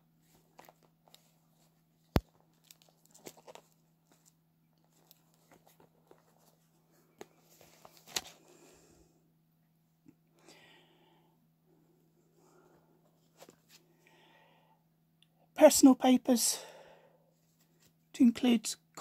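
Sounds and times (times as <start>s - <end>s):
faint steady hum: 0.0s - 19.0s
clicks taps and rustles of handling: 2.1s - 8.3s.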